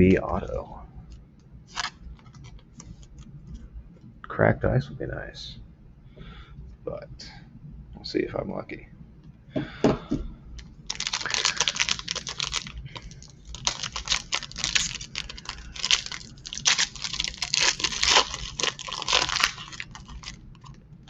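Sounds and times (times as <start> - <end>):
foil wrapper crackling and rustling: 1.7 - 3.2, 10.9 - 20.9
foil pack tearing: 10.9 - 20.8
sharp wrapper clicks: 10.9 - 20.8.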